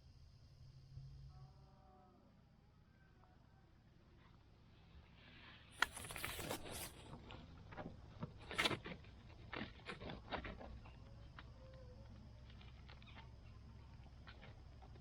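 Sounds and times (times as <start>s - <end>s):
faint outdoor background: 0.0s - 15.0s
rustles and scrapes: 4.2s - 11.6s.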